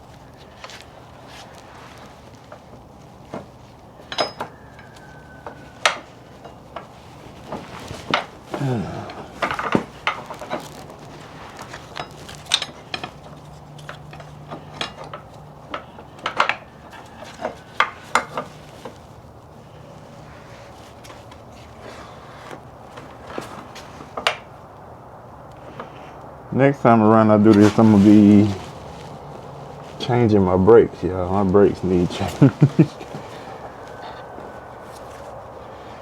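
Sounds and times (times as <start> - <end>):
metal tools clinking: 4.0 - 7.1, 7.9 - 19.0.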